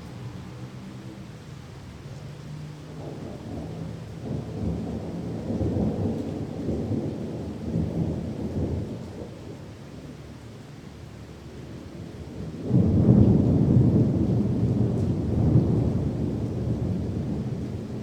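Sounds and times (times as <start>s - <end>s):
steady rain: 0.0s - 18.0s
thunder rumbling: 2.9s - 9.7s, 12.3s - 18.0s.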